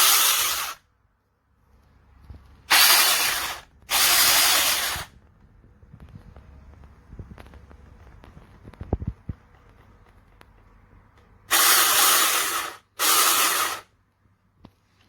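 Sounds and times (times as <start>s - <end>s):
hissing spray bursts: 0.0s - 0.8s, 2.7s - 5.1s, 11.5s - 13.9s.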